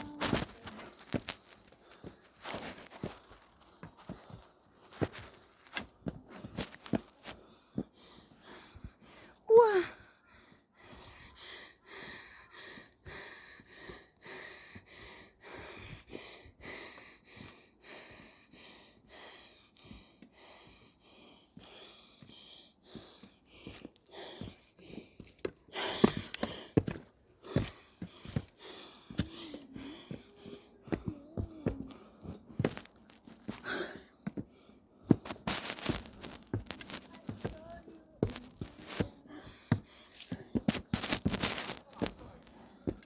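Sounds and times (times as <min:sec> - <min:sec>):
person panting: 0:27.4 - 0:32.9, 0:38.2 - 0:40.7.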